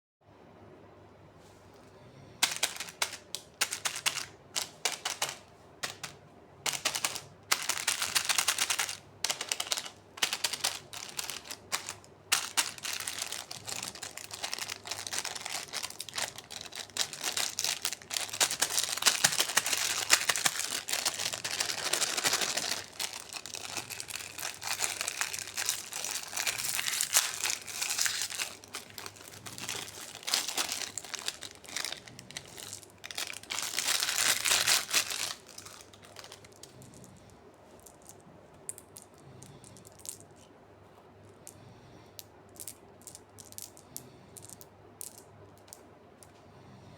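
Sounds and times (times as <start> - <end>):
plastic wrappers crinkling: 2.4 - 37.1.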